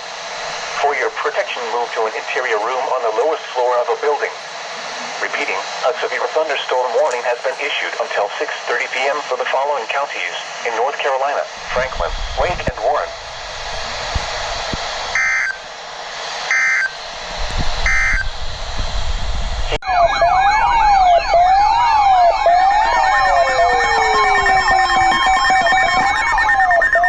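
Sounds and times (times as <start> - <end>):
radio hiss: 0.0 - 18.8, 21.5 - 26.6
steady high tone: 0.1 - 18.8, 19.8 - 27.0
wailing electronic siren tones: 15.1 - 15.7, 16.5 - 17.0, 17.8 - 18.4, 19.8 - 27.0
short data bursts: 17.8 - 18.3.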